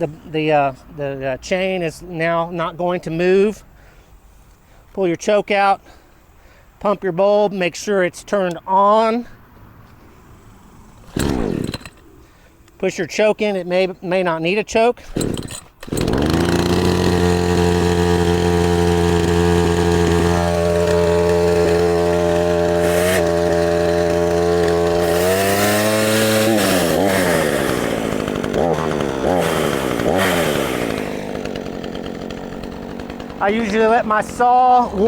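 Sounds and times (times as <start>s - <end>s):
chainsaw engine starting and revving: 10.1s - 12.5s, 15.0s - 35.0s.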